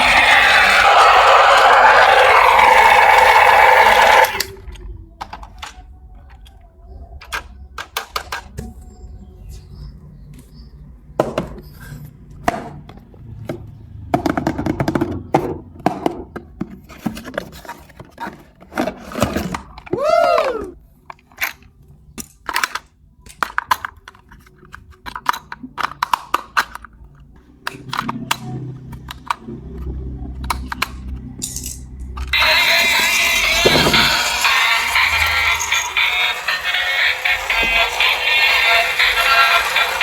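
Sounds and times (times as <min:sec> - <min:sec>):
electronic toy gliding tones: 0:00.0 - 0:04.5, 0:32.3 - 0:40.0
plastic toys being handled: 0:00.0 - 0:06.6, 0:15.9 - 0:20.1, 0:20.9 - 0:40.0.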